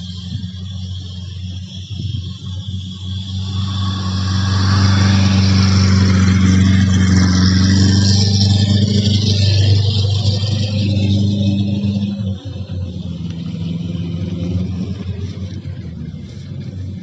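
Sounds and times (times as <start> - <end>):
rushing machinery noise: 0.0 - 16.8
combine harvester engine drone: 0.0 - 17.0.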